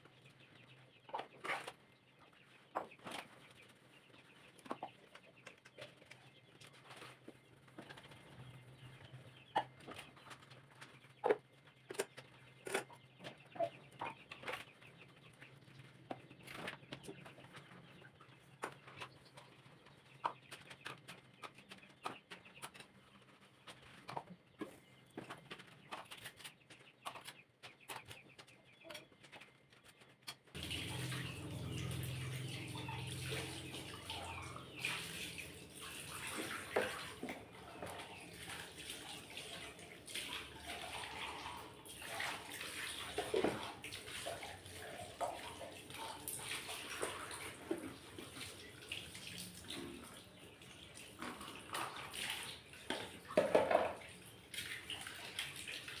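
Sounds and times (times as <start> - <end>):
water running from a tap: 30.6 - 50.2
items knocking and clattering: 52.9 - 54.2.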